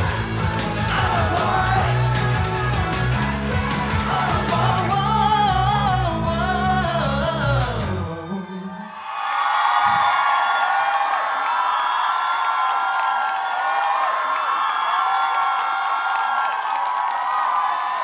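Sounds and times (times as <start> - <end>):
funk-pop song with vocal harmonies: 0.0 - 9.0.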